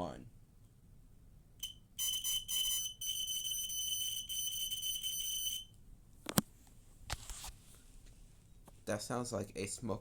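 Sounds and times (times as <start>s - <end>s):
high-pitched electronic alarm horn: 1.6s - 5.8s.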